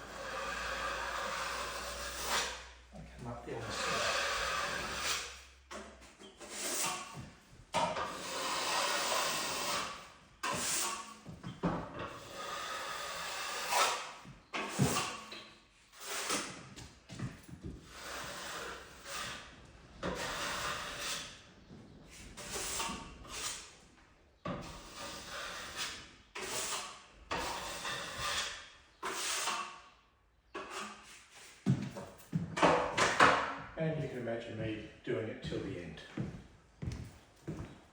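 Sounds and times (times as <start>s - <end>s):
trowel scraping plaster: 0.0s - 2.7s, 3.5s - 5.4s, 6.0s - 7.3s, 8.0s - 11.2s, 12.1s - 16.8s, 17.8s - 21.4s, 22.4s - 23.8s, 24.5s - 29.8s, 30.5s - 31.6s.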